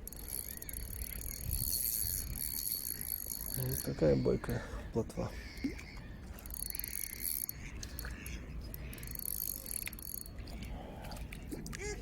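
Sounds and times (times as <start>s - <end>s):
fishing reel whirring: 0.0s - 4.5s, 5.5s - 10.4s.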